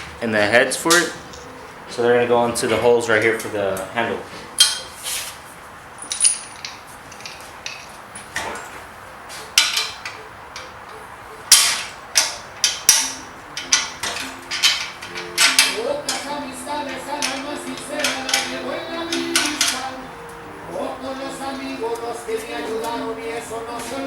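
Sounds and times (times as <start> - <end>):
clinks of small screws and parts: 6.0 - 8.0.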